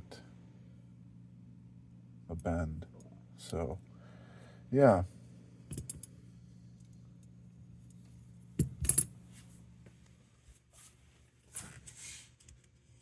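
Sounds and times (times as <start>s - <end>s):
small metal parts clinking: 5.7s - 6.1s, 8.6s - 9.1s.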